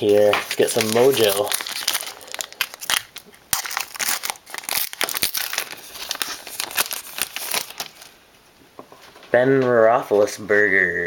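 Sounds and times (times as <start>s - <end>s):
plastic wrapper tearing and crinkling: 0.0s - 8.2s.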